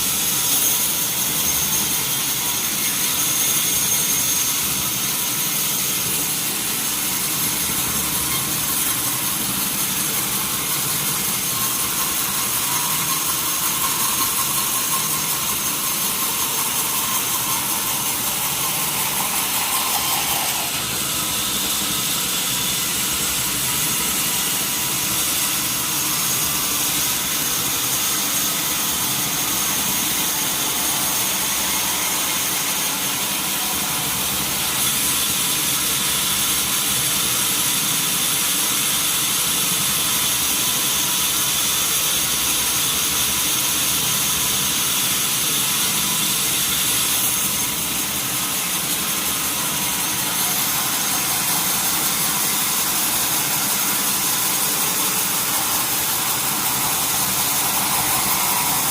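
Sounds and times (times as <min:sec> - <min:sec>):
sawmill machinery with high whine: 0:00.0 - 0:58.9.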